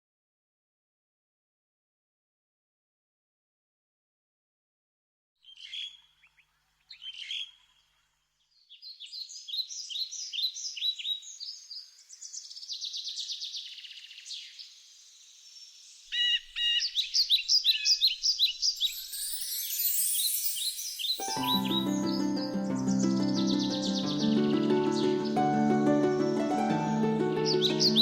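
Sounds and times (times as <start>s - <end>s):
birds chirping and singing: 16.1s - 28.0s.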